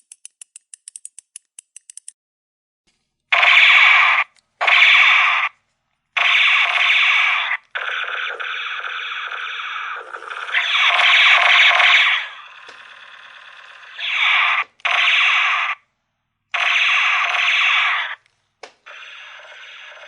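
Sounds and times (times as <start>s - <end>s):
toy ray gun buzzing zaps: 3.4s - 5.6s, 6.2s - 15.8s, 16.5s - 18.2s, 18.8s - 20.0s.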